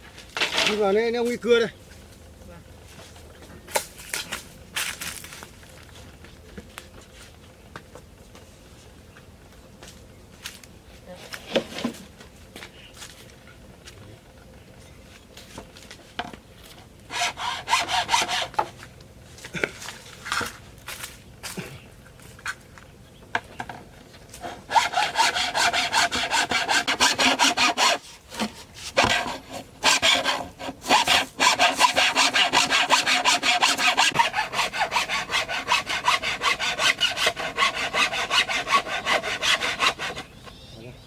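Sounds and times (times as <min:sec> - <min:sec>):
hand saw cutting bamboo: 0:17.1 - 0:18.7, 0:24.4 - 0:40.4.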